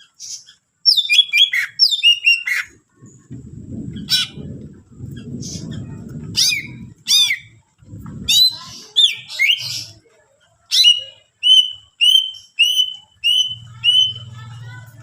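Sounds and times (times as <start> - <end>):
bird singing whistled notes: 0.2 - 2.7, 10.7 - 14.4.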